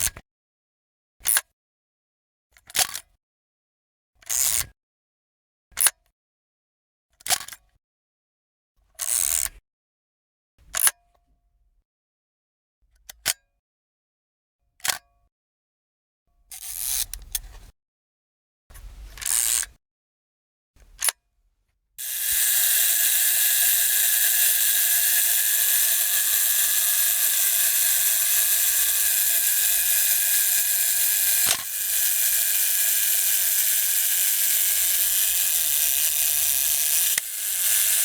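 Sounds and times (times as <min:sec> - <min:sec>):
camera mechanism click: 0:22.0 - 0:38.0
camera motor whirring: 0:22.0 - 0:38.0.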